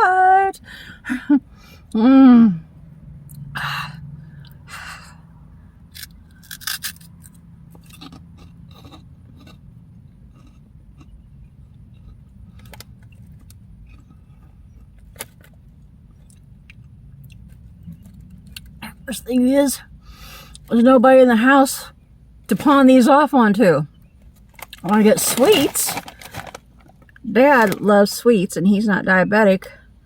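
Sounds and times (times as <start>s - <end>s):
low steady hum: 0.0s - 30.0s
crunchy snack being chewed: 5.9s - 9.6s, 10.3s - 15.6s.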